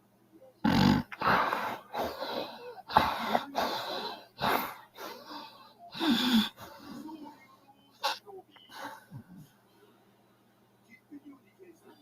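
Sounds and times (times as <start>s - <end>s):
woman snoring: 0.7s - 3.5s, 6.0s - 6.6s.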